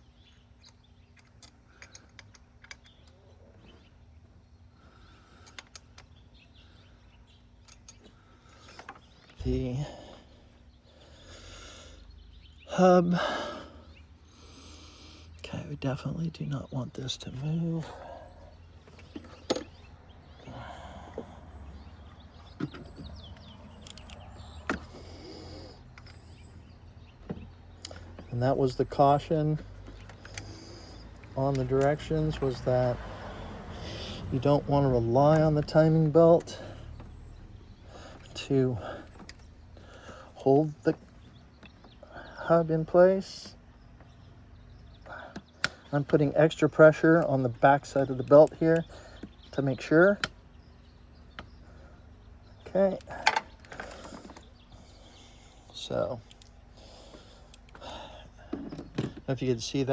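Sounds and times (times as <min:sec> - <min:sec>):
steady low hum: 0:00.0 - 0:59.9
metal clicks of hand tools: 0:23.4 - 0:24.9.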